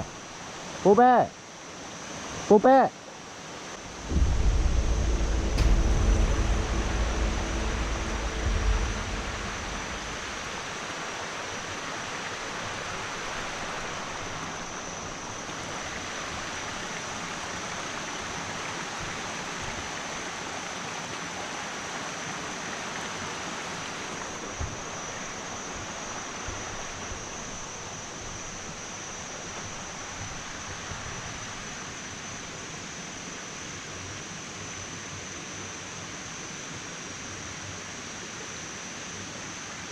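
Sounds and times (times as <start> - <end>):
wind rumbling on microphone: 3.8 - 12.0
water rushing over rocks: 3.8 - 31.9.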